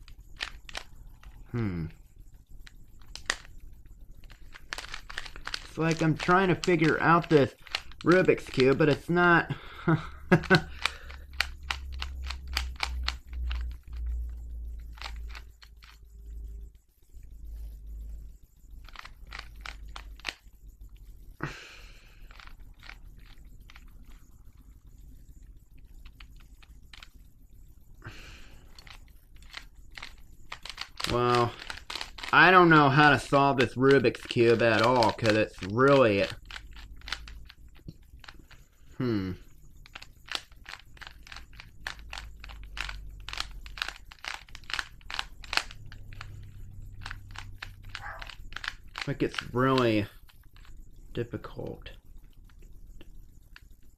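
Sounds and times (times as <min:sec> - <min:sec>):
plastic cube clicking: 0:00.0 - 0:00.9, 0:02.6 - 0:03.6, 0:04.2 - 0:09.2, 0:10.3 - 0:14.0, 0:14.9 - 0:16.0, 0:18.8 - 0:20.4, 0:22.3 - 0:23.9, 0:28.8 - 0:38.5, 0:39.8 - 0:46.4, 0:47.0 - 0:50.7.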